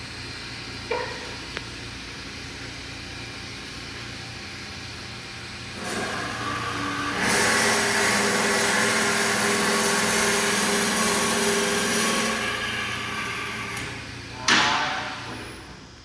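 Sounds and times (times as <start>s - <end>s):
bandsaw cutting metal: 5.8s - 13.9s
loud sharp metal clank: 14.4s - 15.7s.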